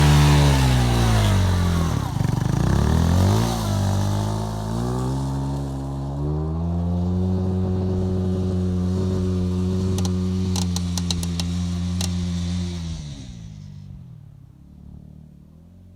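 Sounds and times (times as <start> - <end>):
motorcycle engine revving: 0.0 - 15.4
sharp clicks: 10.0 - 12.2.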